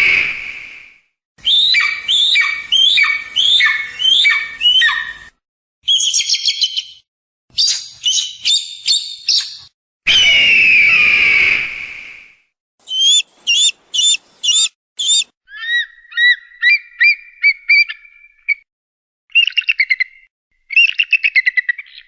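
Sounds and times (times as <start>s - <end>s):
eagle calls: 1.4s - 5.2s, 12.8s - 18.1s
eagle screaming harshly: 10.1s - 11.7s, 12.8s - 15.8s.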